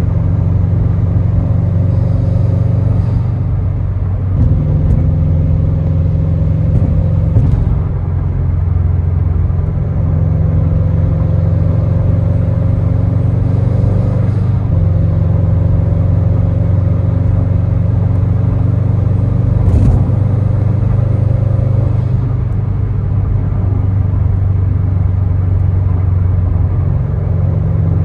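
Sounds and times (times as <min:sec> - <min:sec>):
car engine rumble: 0:00.0 - 0:28.0
brief thump: 0:04.4 - 0:08.2, 0:19.6 - 0:21.0.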